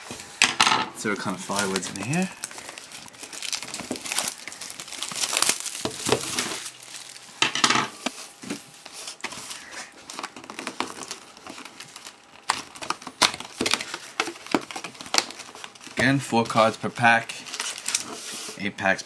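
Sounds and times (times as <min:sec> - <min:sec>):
plastic wrapping crinkling: 0:01.0 - 0:19.0.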